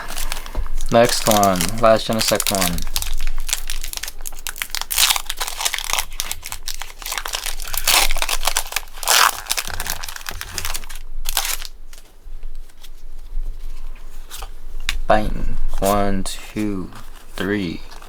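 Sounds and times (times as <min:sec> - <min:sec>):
foil wrapper crinkling and tearing: 0:00.0 - 0:12.0.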